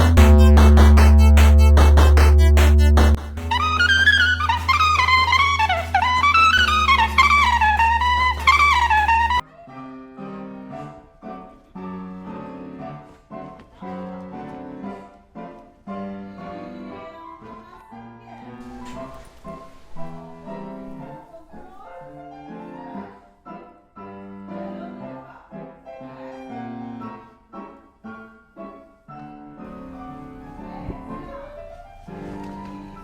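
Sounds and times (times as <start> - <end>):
piano background music: 0.0 - 33.0.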